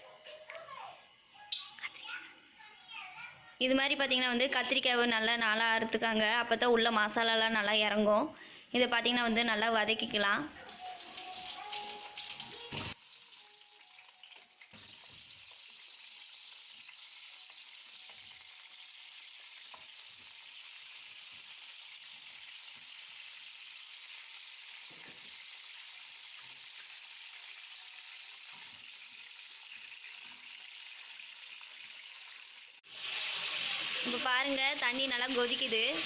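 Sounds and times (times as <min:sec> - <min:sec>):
eggplant sizzling in hot oil: 0:09.6 - 0:36.0.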